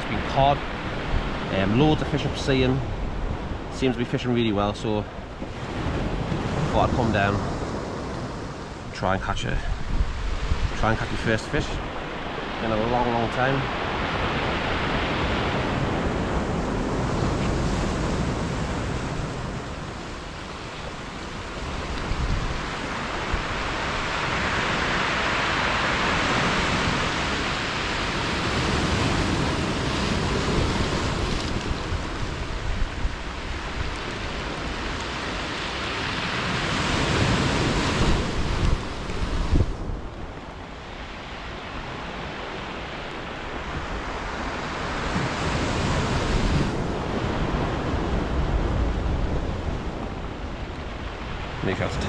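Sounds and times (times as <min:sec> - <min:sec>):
surf breaking on shore: 0:00.0 - 0:52.0
wind buffeting microphone: 0:05.2 - 0:12.6, 0:13.8 - 0:25.3, 0:26.0 - 0:42.1.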